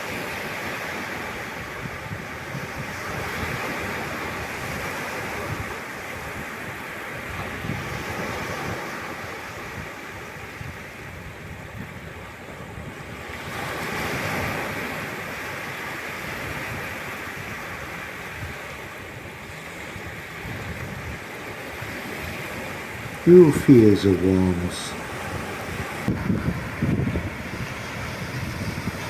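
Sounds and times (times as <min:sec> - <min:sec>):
surf washing ashore: 0:00.0 - 0:29.0
wind buffeting microphone: 0:25.7 - 0:29.0.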